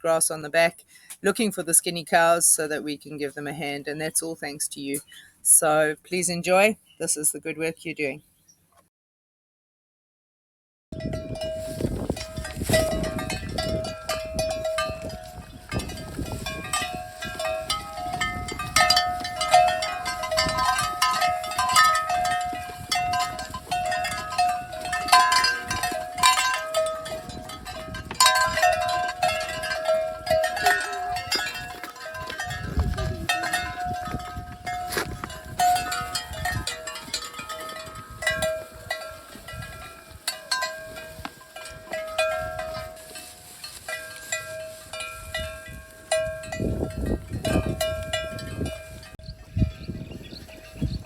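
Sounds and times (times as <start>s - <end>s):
cowbells clanking: 11.0s - 51.0s.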